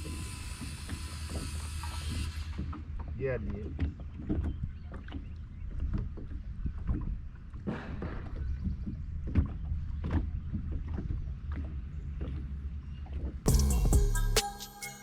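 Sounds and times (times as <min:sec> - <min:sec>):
low rumble: 0:13.5 - 0:14.4.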